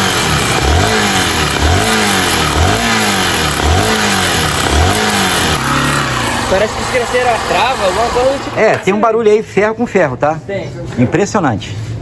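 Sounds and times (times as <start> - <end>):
motorcycle engine revving: 0.0 - 9.0.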